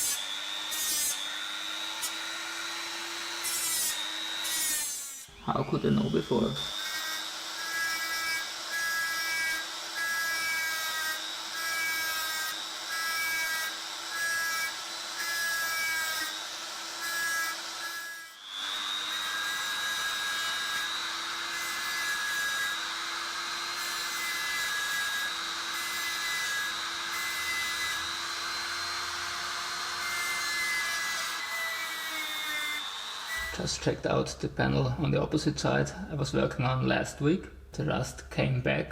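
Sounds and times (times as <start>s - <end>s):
grinder whining on sheet metal: 0.0s - 33.9s.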